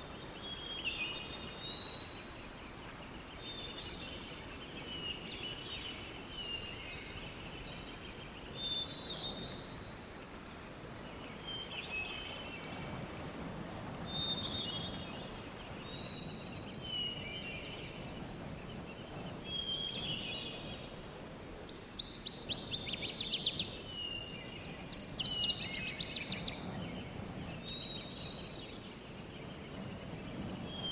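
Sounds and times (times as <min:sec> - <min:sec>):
outdoor background hiss: 0:00.0 - 0:30.9.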